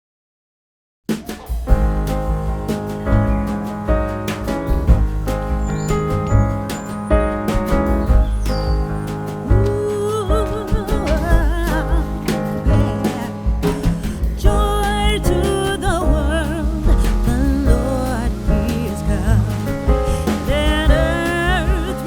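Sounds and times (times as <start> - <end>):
song with singer guitar and beat: 7.5 - 22.0.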